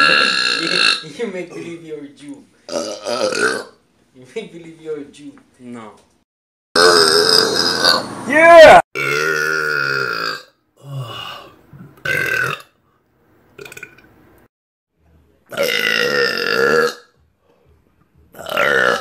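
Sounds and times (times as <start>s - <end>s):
man belching: 0.0s - 1.7s, 2.7s - 3.8s, 6.8s - 8.1s, 9.0s - 12.7s, 15.5s - 17.1s, 18.4s - 19.0s.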